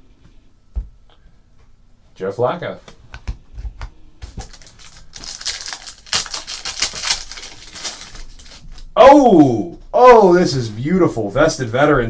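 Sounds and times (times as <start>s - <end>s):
cards clicking and rustling: 4.2s - 8.9s.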